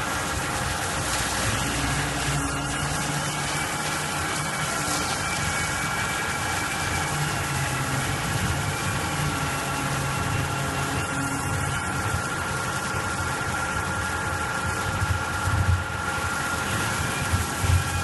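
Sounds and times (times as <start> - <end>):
machine noise: 0.0 - 18.0
router spindle whine: 0.0 - 18.0.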